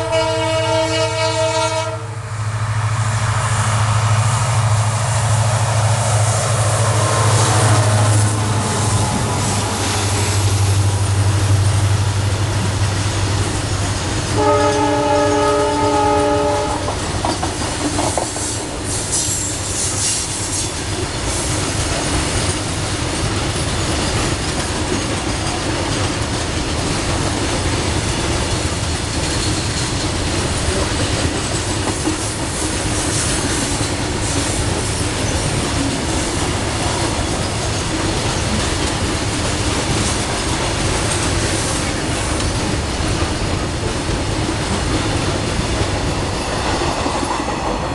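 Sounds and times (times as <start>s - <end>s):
locomotive horn chord: 0.0s - 2.2s, 14.3s - 16.9s
locomotive engine drone: 0.0s - 17.8s
train wheels clattering on rails: 2.9s - 47.9s.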